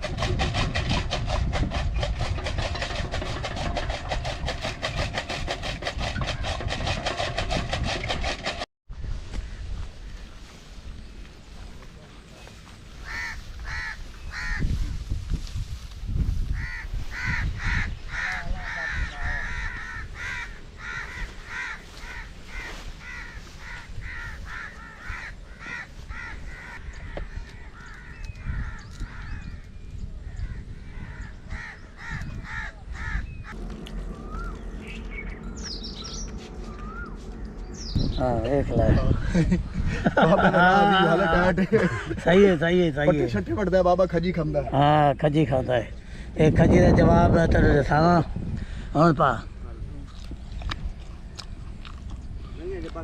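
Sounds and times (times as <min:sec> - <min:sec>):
crows cawing: 0:13.0 - 0:14.8, 0:16.5 - 0:38.1
low rumble: 0:13.4 - 0:40.8.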